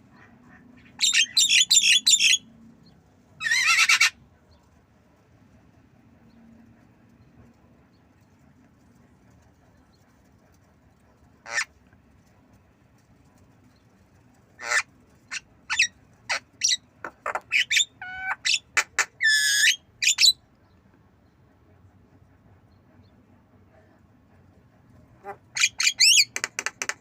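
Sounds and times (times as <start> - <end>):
bird calling with harsh notes: 0.9 - 2.4, 3.4 - 4.2, 14.6 - 20.4, 25.2 - 27.0.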